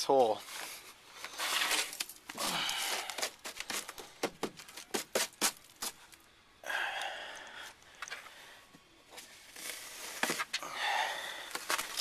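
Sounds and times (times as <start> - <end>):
rustling and scraping of debris: 0.2 - 6.2, 9.1 - 12.0.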